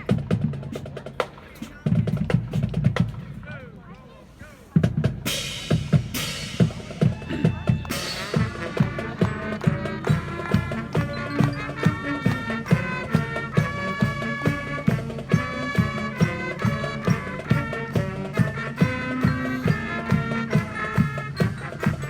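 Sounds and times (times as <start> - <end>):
drums steady beat: 0.0 - 22.0
marching band playing: 0.0 - 22.0
wind instrument chords: 5.3 - 22.0.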